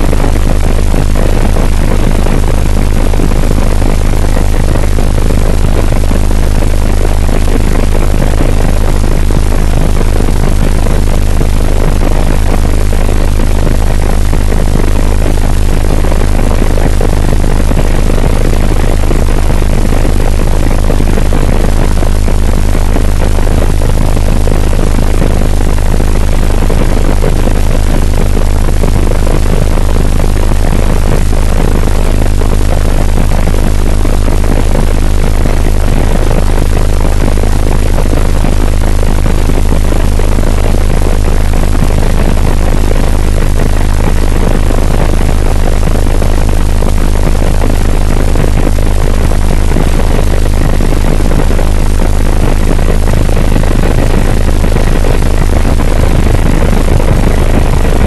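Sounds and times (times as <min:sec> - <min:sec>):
helicopter flying: 0:00.0 - 0:38.6.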